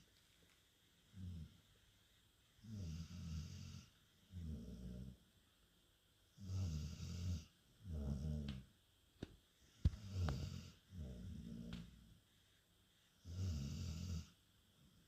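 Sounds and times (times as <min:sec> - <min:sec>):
dog snoring: 0:01.1 - 0:01.6, 0:02.6 - 0:05.2, 0:06.3 - 0:08.7, 0:09.8 - 0:12.1, 0:13.2 - 0:14.4.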